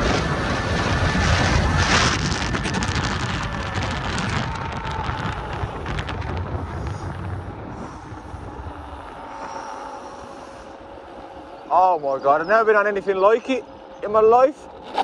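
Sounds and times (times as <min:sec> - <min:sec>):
crackles: 0:00.0 - 0:15.0
faint steady whine: 0:00.0 - 0:15.0
road and tyre rumble: 0:00.0 - 0:15.0
wind buffeting microphone: 0:00.0 - 0:15.0.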